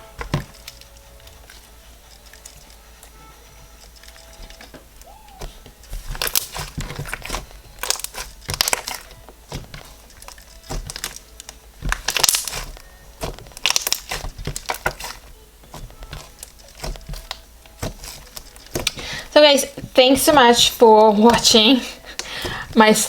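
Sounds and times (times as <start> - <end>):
slime beads crackling: 3.8 - 23.0
small air pops: 3.9 - 20.5.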